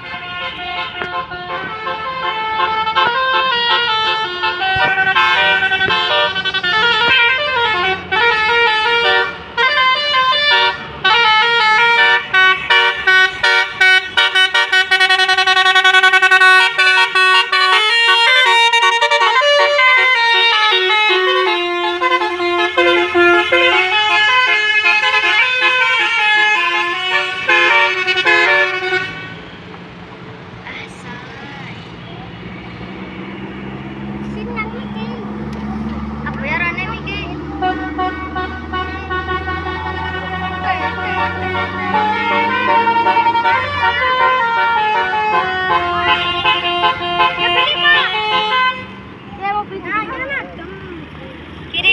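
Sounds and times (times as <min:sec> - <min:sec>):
musical air horn melody: 0:00.0 - 0:29.4, 0:37.5 - 0:49.0.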